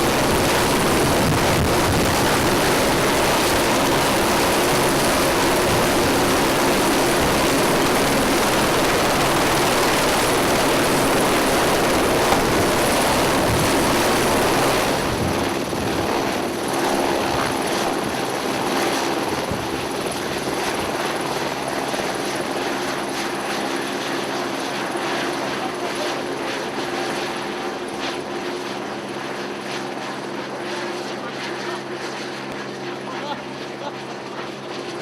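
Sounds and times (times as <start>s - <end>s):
helicopter rotor and engine: 0.0s - 35.0s.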